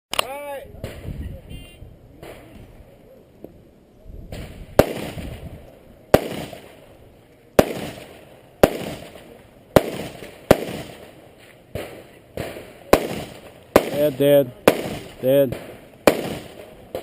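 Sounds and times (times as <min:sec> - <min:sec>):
gunshot echo: 0:04.3 - 0:05.5, 0:06.1 - 0:06.8, 0:07.6 - 0:17.0
rifle shots: 0:04.3 - 0:05.5, 0:06.1 - 0:06.8, 0:07.6 - 0:17.0.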